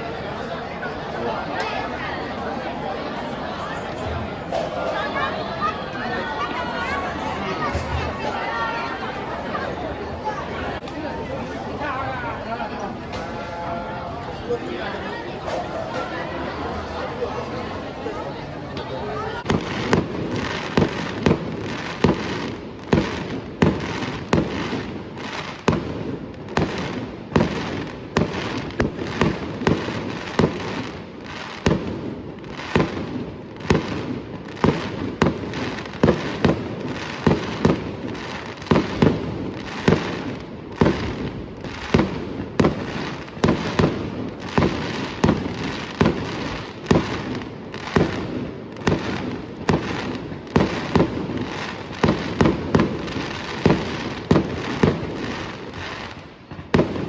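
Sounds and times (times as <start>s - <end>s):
fireworks bangs: 0.0s - 57.0s.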